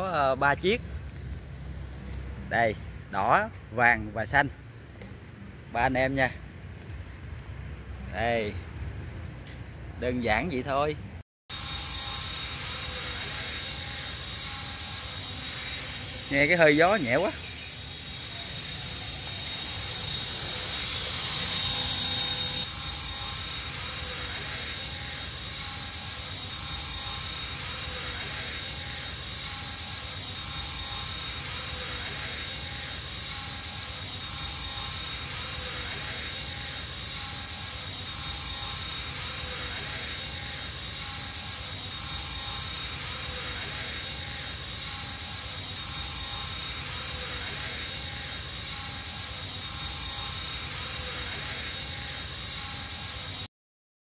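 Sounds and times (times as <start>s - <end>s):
model helicopter rotor whirring: 11.5s - 53.5s.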